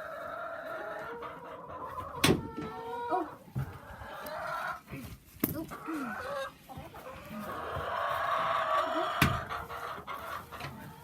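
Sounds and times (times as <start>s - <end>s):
hens clucking: 0.0s - 11.0s.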